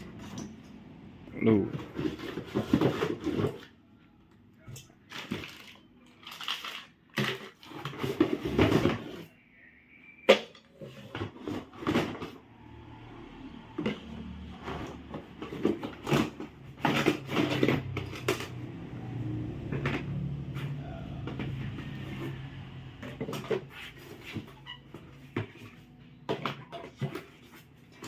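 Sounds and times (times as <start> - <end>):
objects knocking and clattering: 1.6 - 3.8, 6.6 - 9.3, 10.3 - 12.4, 13.7 - 28.0.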